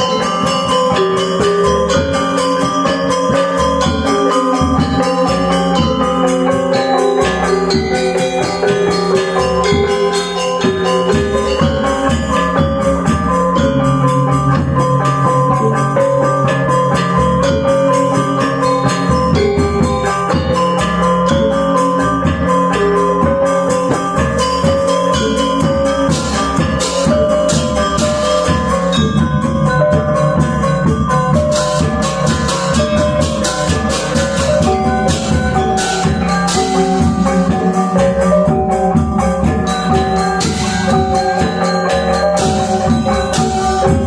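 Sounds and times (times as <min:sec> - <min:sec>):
drums: 0:00.0 - 0:44.0
metallophones struck with mallets: 0:00.0 - 0:44.0.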